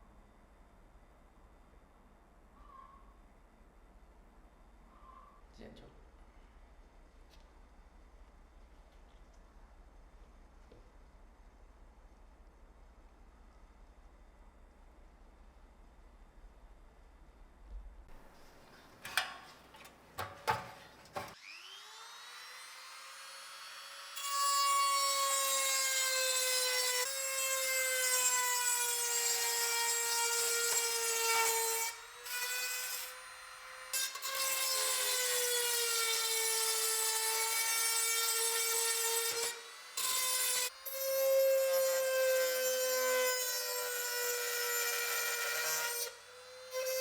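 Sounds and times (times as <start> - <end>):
power tool rasping on metal: 24.2 - 47.0.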